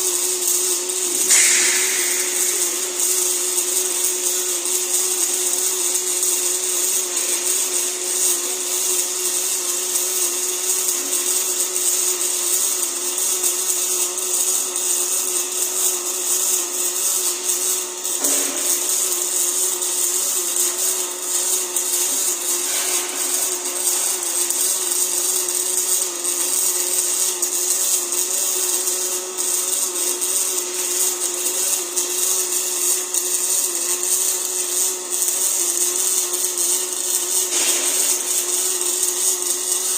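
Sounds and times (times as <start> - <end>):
welding hiss: 0.0 - 39.9.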